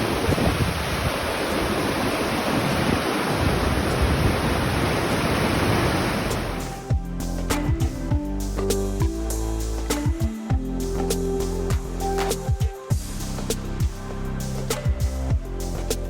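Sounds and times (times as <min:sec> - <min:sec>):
stream water rushing: 0:00.0 - 0:06.9.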